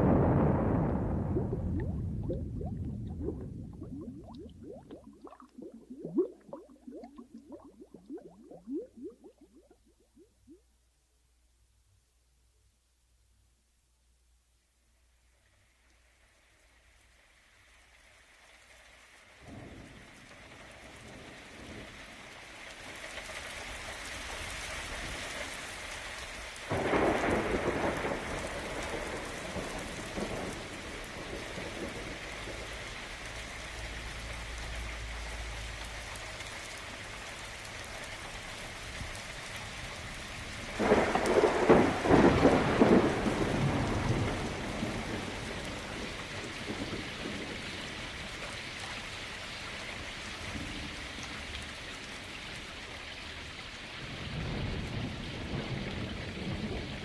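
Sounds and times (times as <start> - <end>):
thunder rolling: 0.0 - 9.7, 26.7 - 32.8, 40.7 - 48.1
steady rain: 0.0 - 10.6, 14.8 - 57.0.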